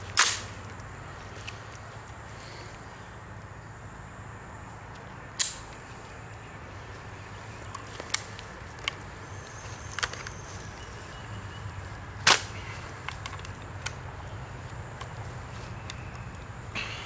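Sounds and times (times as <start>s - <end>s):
low background hum: 0.0s - 17.0s
faint clicks: 7.6s - 16.5s.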